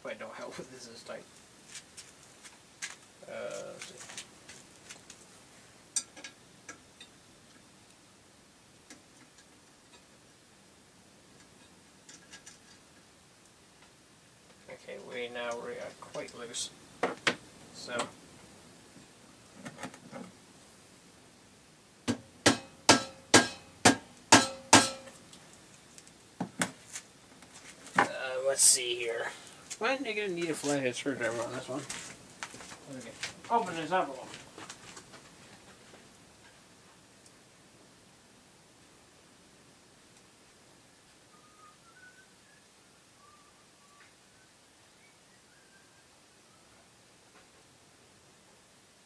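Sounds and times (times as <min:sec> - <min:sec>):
tool striking metal: 0:22.1 - 0:25.2.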